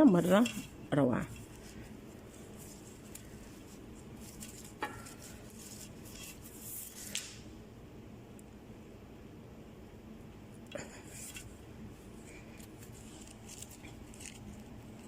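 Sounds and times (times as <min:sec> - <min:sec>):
rustle of small objects: 0:00.0 - 0:07.4
low room hum: 0:00.0 - 0:15.0.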